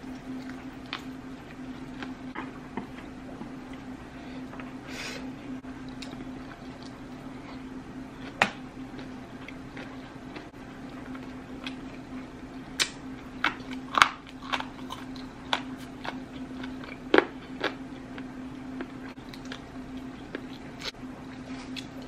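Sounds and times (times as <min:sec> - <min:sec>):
crunchy eating and chewing: 0:00.0 - 0:04.8, 0:05.7 - 0:22.0
steady low hum: 0:00.0 - 0:22.0.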